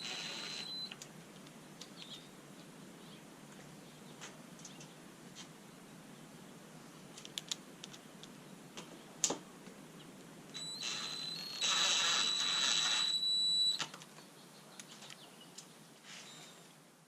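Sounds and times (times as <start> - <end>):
impact driver whining: 0.0 - 0.9, 10.6 - 13.8.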